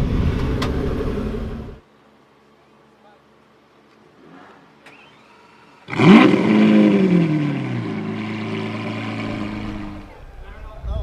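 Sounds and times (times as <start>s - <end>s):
supercar engine starting and revving: 4.0s - 10.3s.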